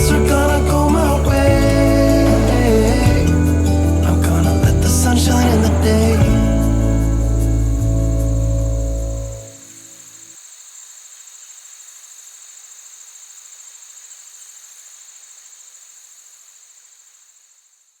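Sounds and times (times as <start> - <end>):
music: 0.0 - 9.6
insects chirring: 0.0 - 18.0.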